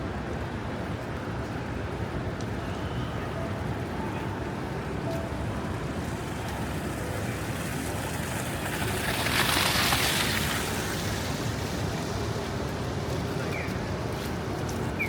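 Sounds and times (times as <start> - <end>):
street noise: 0.0 - 15.0
tyres hissing on snowy road: 6.0 - 15.0.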